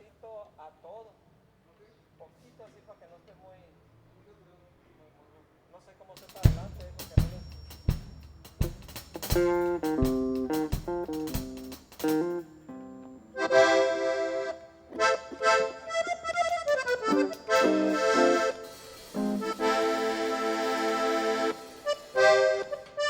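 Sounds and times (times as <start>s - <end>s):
drum hits: 6.2s - 12.4s, 16.4s - 23.0s
accordion playing chords: 7.8s - 23.0s.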